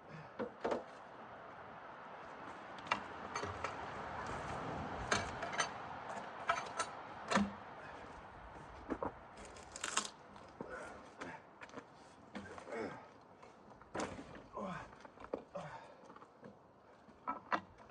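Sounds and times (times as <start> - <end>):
metal clanks and knocks: 5.0 - 7.6.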